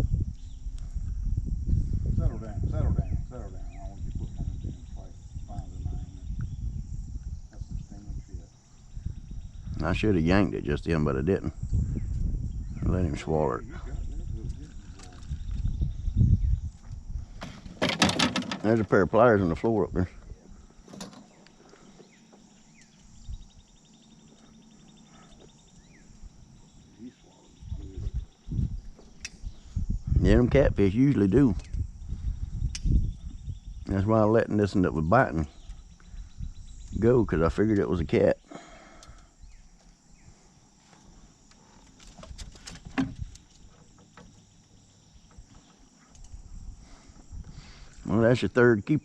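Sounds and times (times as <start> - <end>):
crickets chirring: 0.0 - 49.0
faint insect hum: 0.0 - 49.0
short knocks and clicks: 17.4 - 18.7
bird chirps: 21.2 - 29.8, 38.3 - 40.4.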